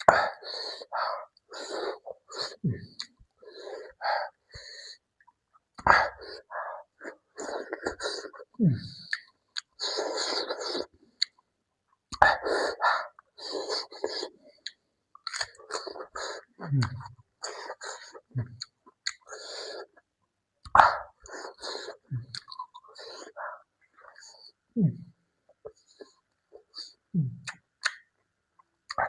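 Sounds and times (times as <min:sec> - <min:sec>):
hissing breaths: 0:00.0 - 0:05.0
person chewing noisily: 0:07.0 - 0:11.4, 0:13.4 - 0:20.0, 0:20.7 - 0:23.4.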